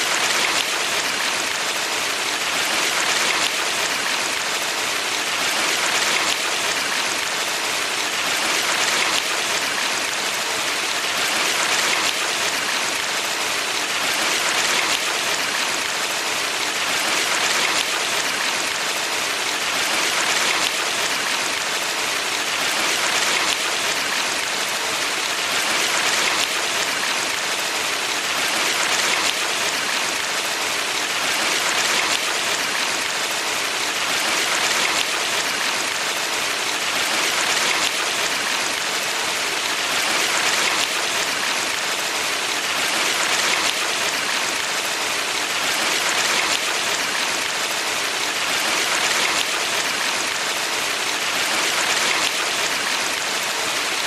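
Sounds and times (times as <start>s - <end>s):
stream water rushing: 0.0s - 54.0s.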